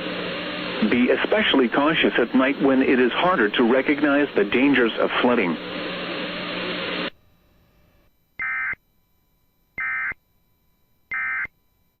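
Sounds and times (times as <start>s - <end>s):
radio hiss with hum: 0.0s - 8.8s.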